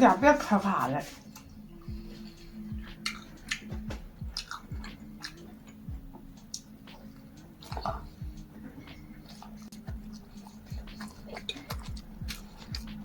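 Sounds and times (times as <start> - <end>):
person chewing food: 1.2 - 13.0
wet mouth clicks and smacks: 3.0 - 5.8, 9.3 - 13.0.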